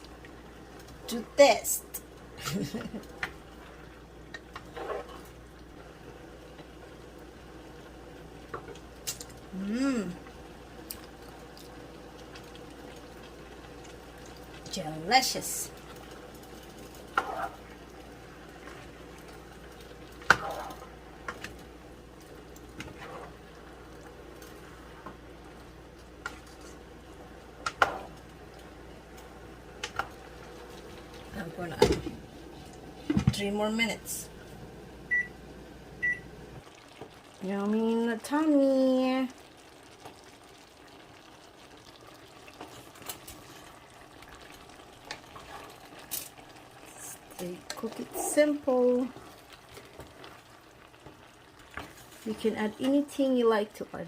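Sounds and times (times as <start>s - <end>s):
pot simmering: 0.0s - 54.0s
utensil scraping a pot: 4.6s - 5.3s, 17.1s - 17.8s, 22.8s - 23.4s.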